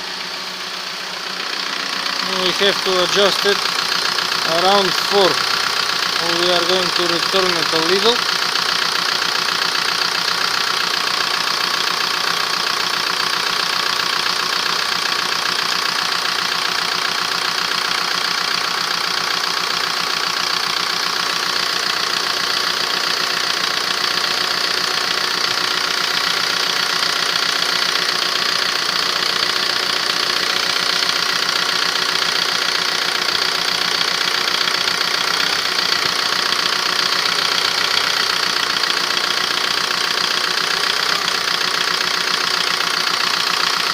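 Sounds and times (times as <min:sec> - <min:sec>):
diesel engine idling with clatter: 0:00.0 - 0:43.9.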